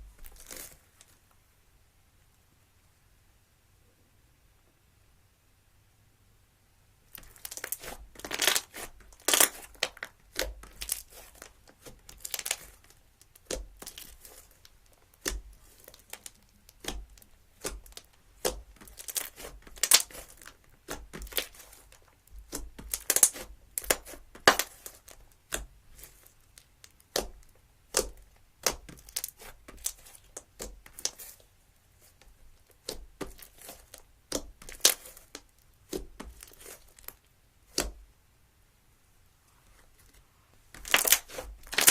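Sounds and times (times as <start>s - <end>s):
slime popping and crackling: 7.1s - 31.4s, 32.1s - 38.0s, 40.7s - 41.9s.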